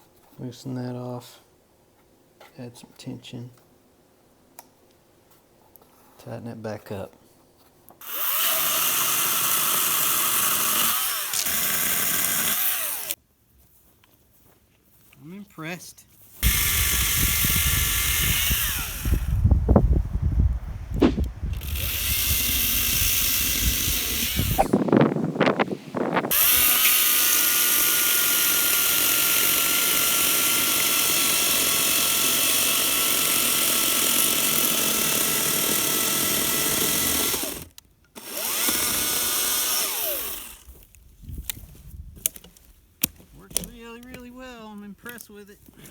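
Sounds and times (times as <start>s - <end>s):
electric chainsaw whining: 8.0s - 13.2s, 16.4s - 19.6s, 21.0s - 24.8s, 25.4s - 40.8s.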